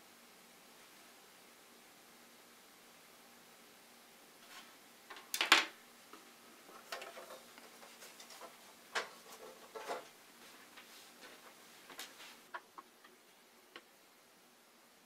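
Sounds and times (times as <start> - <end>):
small clicks and scrapes: 6.7 - 10.2.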